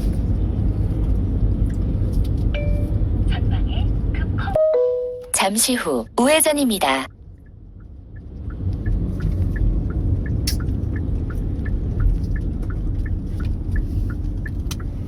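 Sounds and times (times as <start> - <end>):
car engine rumble inside cabin: 0.0 - 15.0
turn signal ticking: 6.5 - 15.0.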